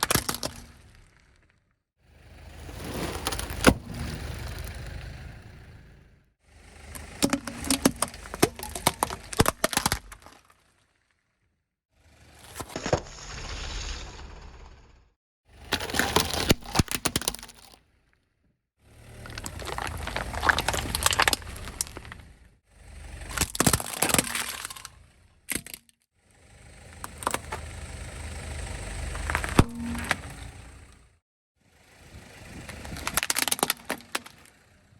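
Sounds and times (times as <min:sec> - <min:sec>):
toys cracking and snapping: 0:00.0 - 0:00.9, 0:07.0 - 0:10.6, 0:15.7 - 0:17.8, 0:19.3 - 0:22.2, 0:23.3 - 0:26.0, 0:32.7 - 0:34.5
tyre rumble: 0:19.1 - 0:24.8.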